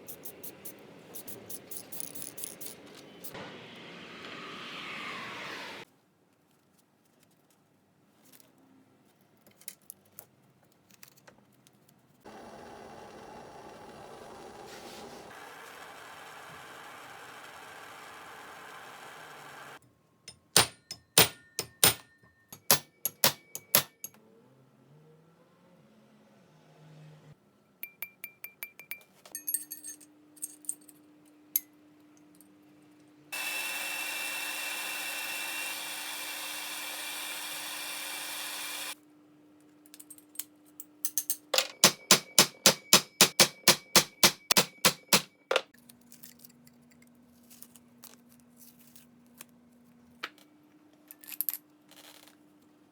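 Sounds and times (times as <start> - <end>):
metallic clicks and taps: 20.3 - 24.2.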